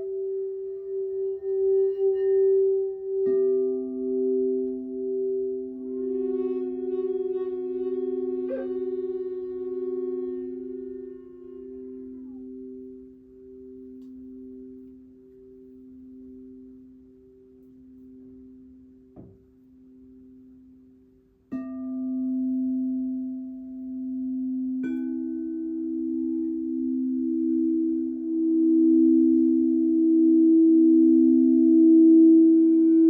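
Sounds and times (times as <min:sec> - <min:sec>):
singing bowls ringing: 0:00.0 - 0:19.1, 0:21.5 - 0:33.0.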